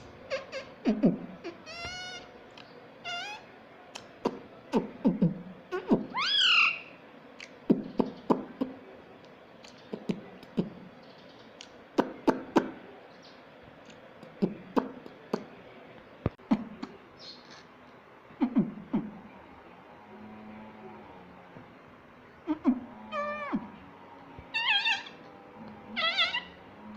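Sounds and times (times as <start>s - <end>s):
parakeet screeching: 1.6s - 2.3s, 3.0s - 3.5s, 6.1s - 6.9s, 24.5s - 25.2s, 26.0s - 26.6s.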